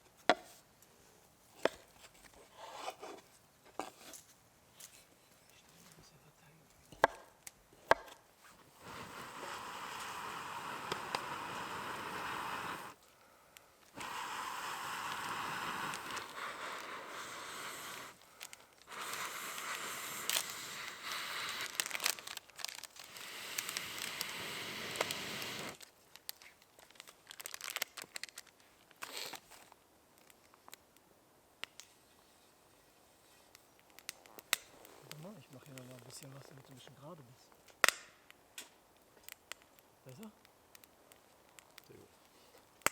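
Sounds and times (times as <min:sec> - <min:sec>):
faint scattered crackles: 0:00.0 - 0:42.9
fat sizzling and spitting in a pan: 0:08.4 - 0:13.0, 0:14.0 - 0:25.8.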